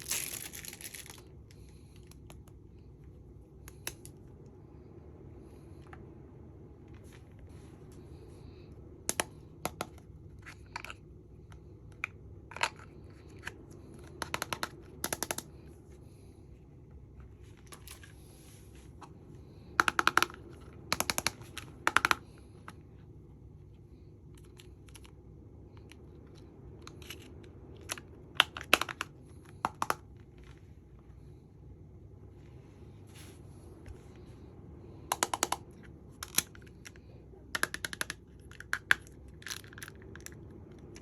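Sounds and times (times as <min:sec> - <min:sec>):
steady low hum: 0:00.0 - 0:41.0
plastic cases clicking and tapping: 0:37.6 - 0:39.9.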